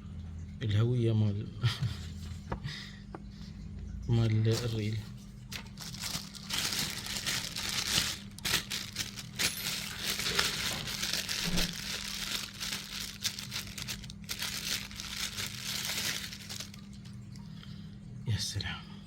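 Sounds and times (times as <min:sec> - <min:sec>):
packaging crinkling: 0:05.5 - 0:17.4.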